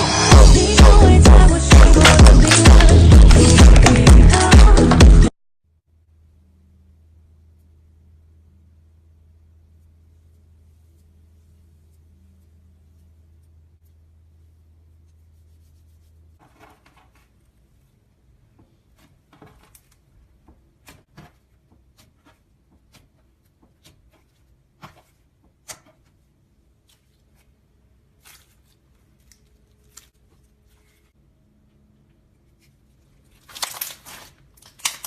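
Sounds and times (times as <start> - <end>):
slime clicks and crackles: 33.5 - 35.0.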